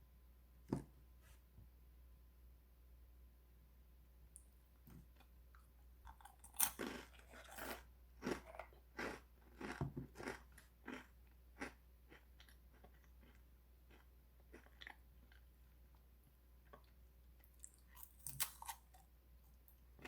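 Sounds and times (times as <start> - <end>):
breadstick crunching: 6.0 - 11.0, 17.6 - 19.0.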